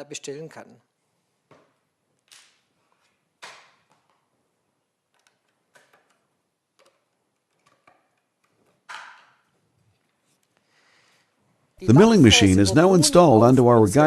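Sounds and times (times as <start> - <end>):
plastic and metal parts clicking: 5.1 - 9.4.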